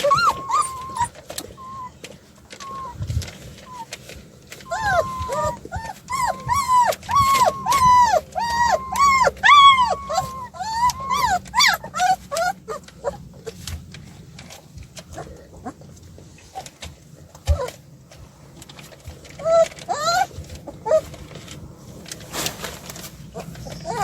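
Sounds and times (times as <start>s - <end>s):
puppies whining and yelping: 0.0s - 13.7s, 15.0s - 16.8s, 17.4s - 17.8s, 19.1s - 21.5s, 23.3s - 24.0s.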